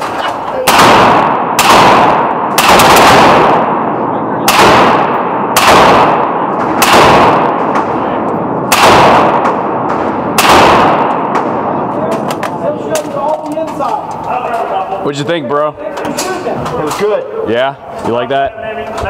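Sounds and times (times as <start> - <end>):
gunshot echo: 0.0 - 12.3
suppressed rifle shots: 0.0 - 12.5.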